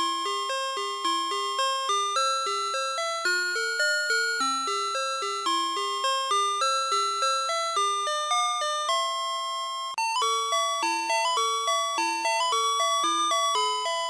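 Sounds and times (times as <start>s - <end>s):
electronic toy chime-like tune: 0.0s - 14.0s.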